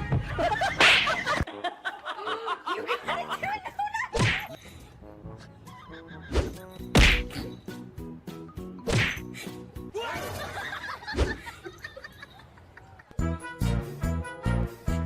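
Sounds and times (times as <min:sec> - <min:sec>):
music with cartoonish bending sounds: 0:04.2 - 0:10.0.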